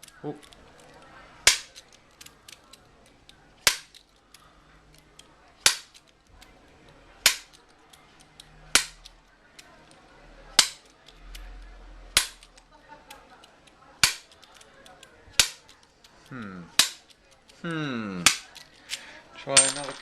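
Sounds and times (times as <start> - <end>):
light key clicks: 1.7 - 10.2, 12.3 - 17.6.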